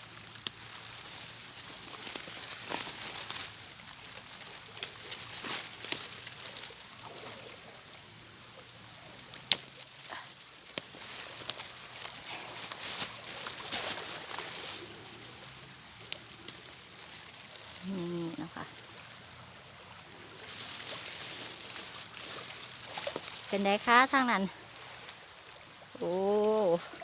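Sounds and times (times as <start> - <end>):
rustling of leafy vegetation: 0.0 - 27.0
plant shoots snapping: 9.3 - 14.4.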